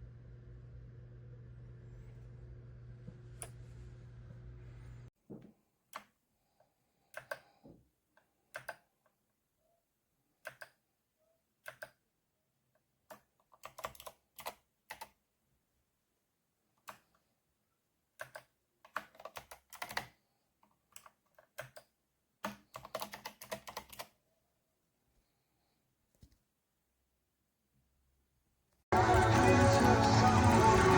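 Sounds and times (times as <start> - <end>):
mechanical keyboard typing: 13.1 - 15.2, 18.2 - 20.1, 21.0 - 24.1.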